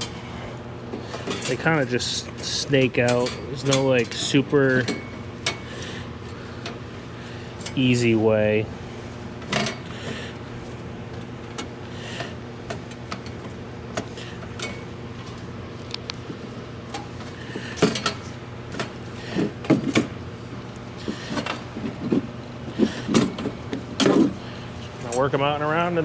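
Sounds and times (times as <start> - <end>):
steady low hum: 0.0 - 26.0
metal clanks knocks and scrapes: 21.0 - 24.4.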